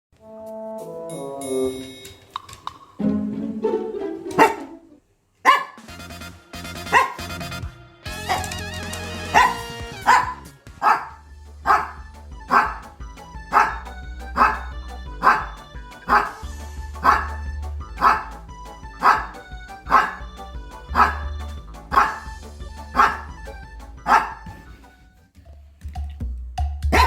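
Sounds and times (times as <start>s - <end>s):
small dog barking: 4.4s - 5.8s, 6.9s - 7.2s, 8.3s - 8.5s, 9.3s - 12.8s, 13.5s - 13.8s, 14.4s - 16.4s, 17.0s - 17.4s, 18.0s - 18.3s, 19.0s - 20.3s, 20.9s - 21.3s, 21.9s - 22.3s, 22.9s - 23.4s, 24.1s - 24.5s
background music with bass: 5.8s - 27.0s.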